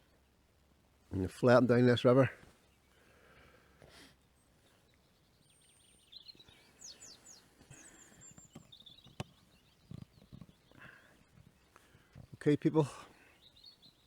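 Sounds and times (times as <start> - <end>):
songbird chirping and twittering: 0.0 - 14.0.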